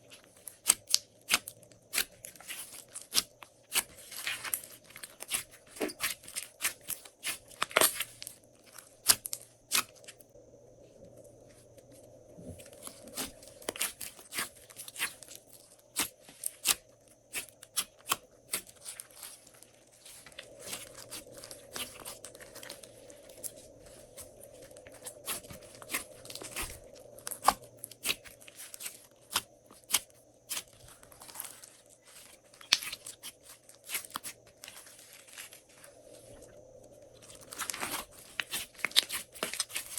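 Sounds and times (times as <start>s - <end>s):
slime squished by hand: 0.5s - 10.2s, 20.0s - 24.0s, 24.9s - 34.8s, 37.2s - 39.9s.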